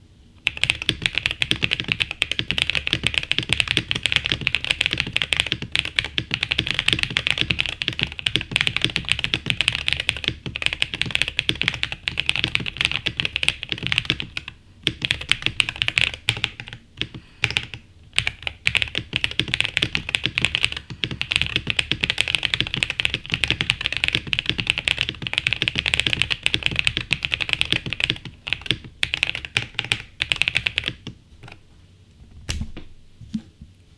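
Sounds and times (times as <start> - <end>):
fast typing on mechanical keyboard: 0.4 - 31.6.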